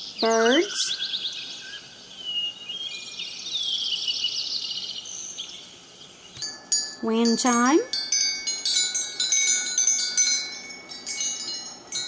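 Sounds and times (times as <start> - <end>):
recorded birdsong chirps and trills: 0.0 - 12.0
ringing wind chime tones: 2.9 - 3.4, 6.4 - 12.0.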